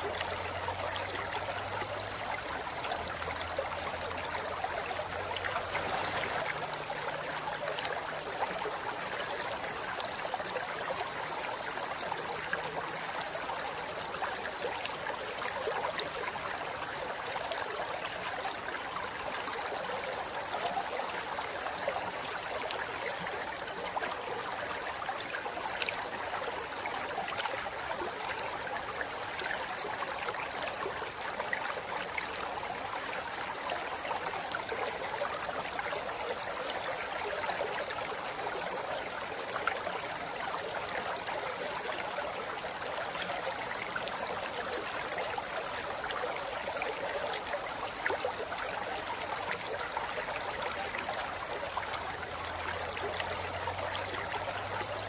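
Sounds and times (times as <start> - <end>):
river flowing over rocks: 0.0 - 55.0.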